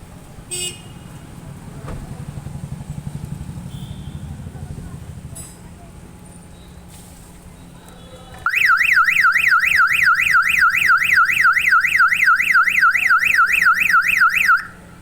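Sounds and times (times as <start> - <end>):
car alarm siren wailing: 8.5 - 14.9.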